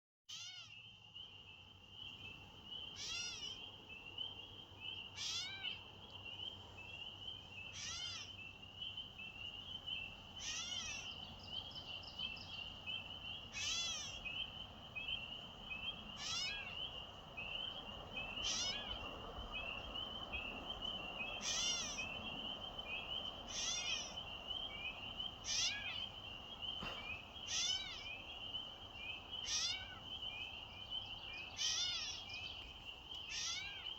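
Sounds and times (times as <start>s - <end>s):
bird mewing call: 0.3s - 0.8s, 2.9s - 3.7s, 5.1s - 5.8s, 7.7s - 8.4s, 10.4s - 11.5s, 13.5s - 14.4s, 15.8s - 17.0s, 17.6s - 33.9s.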